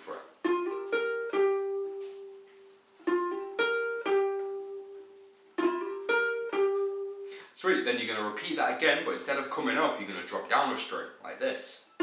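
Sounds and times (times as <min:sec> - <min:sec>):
ukulele single-note riff: 0:00.0 - 0:07.4.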